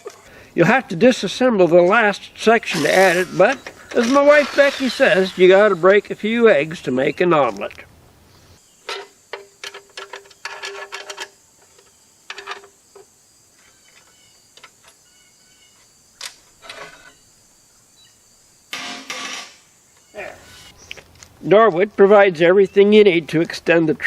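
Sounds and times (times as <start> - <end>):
noisy burst: 2.4 - 6.9
metal tools clinking: 2.7 - 5.4, 8.9 - 11.4.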